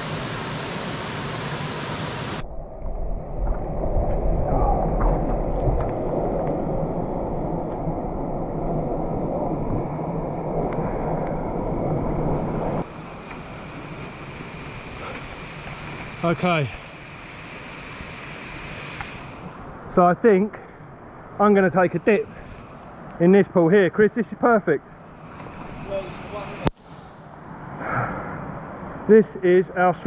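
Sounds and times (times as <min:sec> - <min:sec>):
waterfall rushing: 0:00.0 - 0:02.4, 0:12.8 - 0:19.5, 0:25.2 - 0:26.7.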